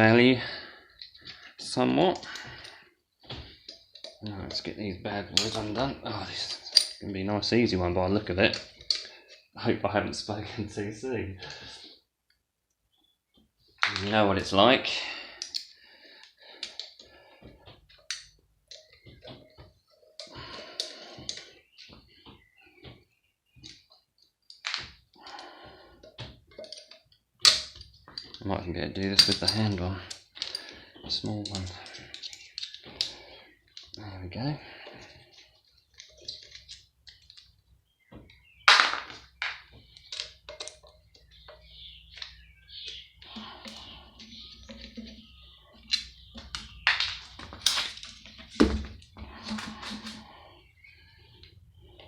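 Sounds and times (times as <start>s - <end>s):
metal parts knocking and clinking: 3.4s - 7.1s, 8.4s - 9.4s, 17.8s - 21.9s, 26.0s - 34.0s, 34.9s - 37.6s, 38.2s - 50.3s
metal tools clicking and scraping: 3.6s - 4.7s, 5.3s - 7.1s, 8.4s - 9.5s, 17.9s - 21.9s, 26.0s - 28.4s, 29.1s - 34.0s, 34.9s - 37.6s, 39.4s - 48.6s.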